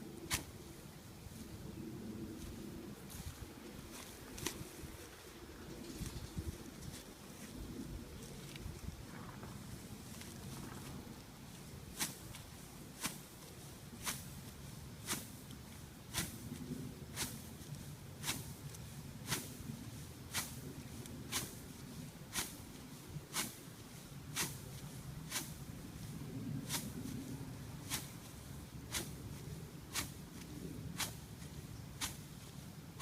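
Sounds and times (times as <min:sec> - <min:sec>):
crackle of crushed stems underfoot: 0:02.4 - 0:07.6, 0:08.2 - 0:19.5.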